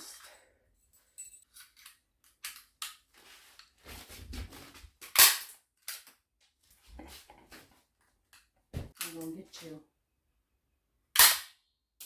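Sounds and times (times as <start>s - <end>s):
handling clicks and rustling: 0.9s - 6.8s.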